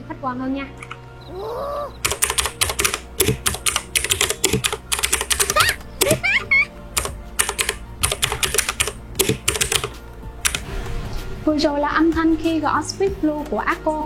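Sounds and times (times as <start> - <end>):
clicky mechanical keyboard typing: 2.0 - 6.2, 7.0 - 10.7.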